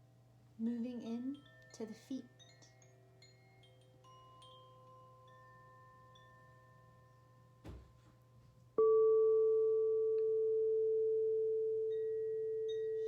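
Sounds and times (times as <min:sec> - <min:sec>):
faint chime tones: 0:00.6 - 0:07.6, 0:08.8 - 0:13.0
soft knock: 0:07.6 - 0:08.1
tuning fork ringing: 0:08.2 - 0:13.0.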